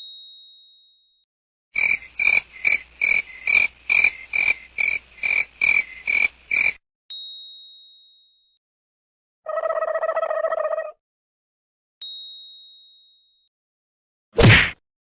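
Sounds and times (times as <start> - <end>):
frog croaking: 1.8 - 6.8, 9.5 - 11.0.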